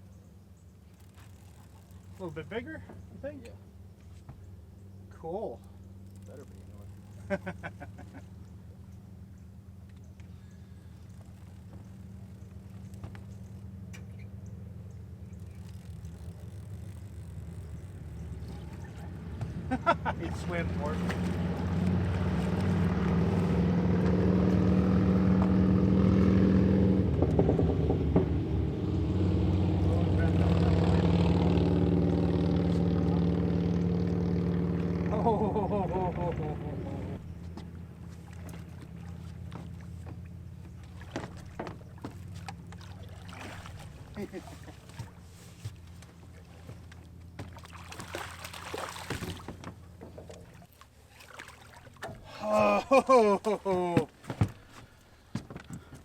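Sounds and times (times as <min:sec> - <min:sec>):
steady low hum: 0:00.0 - 0:25.9
motorboat engine humming: 0:00.0 - 0:56.0
water splashing: 0:14.5 - 0:25.7, 0:29.1 - 0:55.1.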